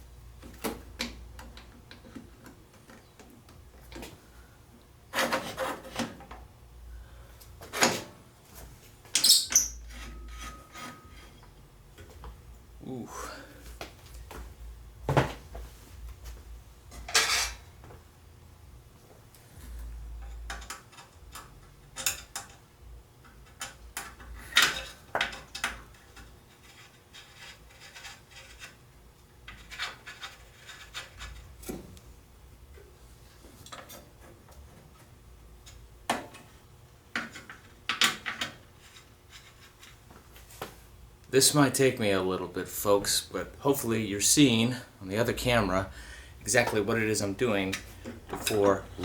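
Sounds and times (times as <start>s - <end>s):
metal parts clinking and scraping: 16.9s - 17.7s.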